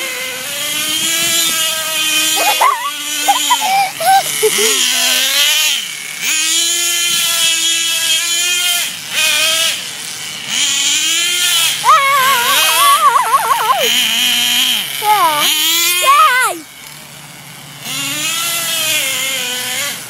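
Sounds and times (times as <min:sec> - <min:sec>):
child making long vocal sounds: 0:02.4 - 0:05.2, 0:11.8 - 0:13.9, 0:15.0 - 0:16.6.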